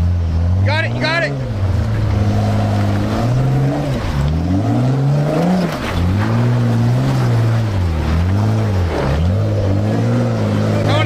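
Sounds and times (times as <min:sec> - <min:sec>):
engine revving: 0:00.0 - 0:11.0
man speaking: 0:00.6 - 0:01.4, 0:10.6 - 0:11.0.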